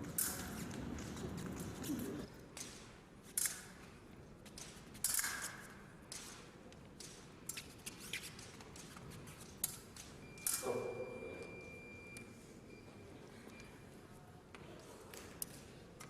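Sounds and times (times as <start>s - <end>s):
fencers' footwork: 0.0s - 10.2s
fencing blades clicking: 0.1s - 1.1s, 2.5s - 10.6s.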